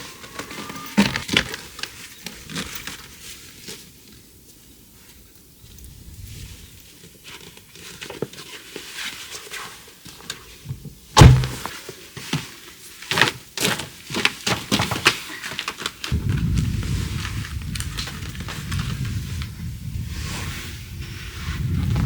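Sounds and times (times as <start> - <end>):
heavy thunk: 11.2 - 11.7.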